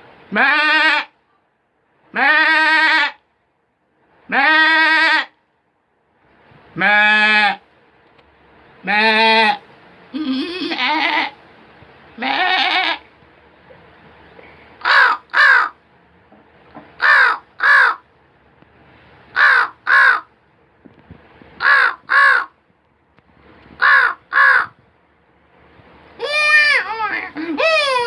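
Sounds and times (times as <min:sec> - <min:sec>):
bleat-like call: 0:00.3 - 0:01.1, 0:02.1 - 0:03.2, 0:04.3 - 0:05.4, 0:06.8 - 0:07.6, 0:08.8 - 0:11.4, 0:12.2 - 0:13.1, 0:26.2 - 0:28.0
man imitating crow caws: 0:21.6 - 0:22.5, 0:23.8 - 0:24.8.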